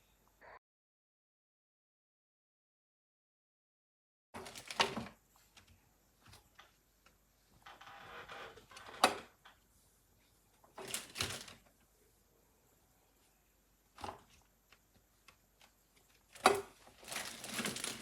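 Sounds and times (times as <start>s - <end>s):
rustling: 14.1s - 18.0s.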